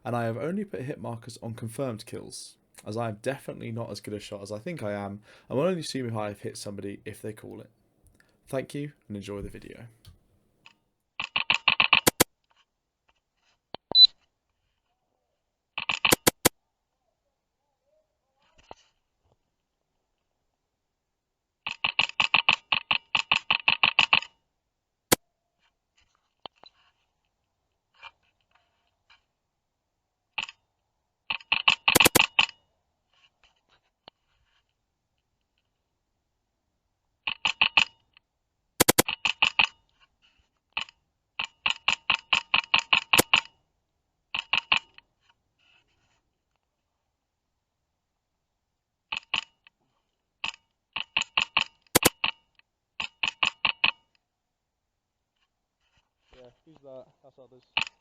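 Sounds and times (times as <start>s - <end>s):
airsoft rifle shots: 38.8s - 39.1s.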